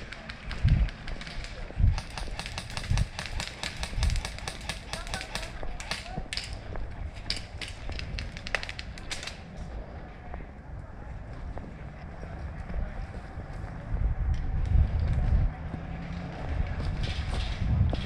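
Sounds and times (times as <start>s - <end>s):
wind on microphone: 0.0s - 1.0s, 1.6s - 4.7s, 5.5s - 18.0s
airsoft guns firing: 0.0s - 6.6s.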